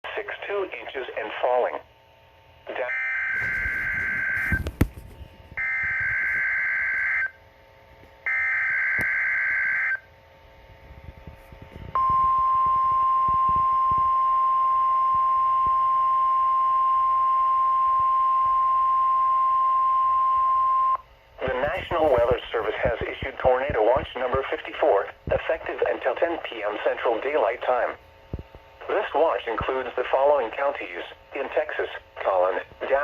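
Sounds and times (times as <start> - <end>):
static crackle: 2.7 - 7.3, 21.4 - 33.0
steady single-pitch warning alarm tone: 2.7 - 7.5, 8.2 - 10.3, 11.5 - 21.1.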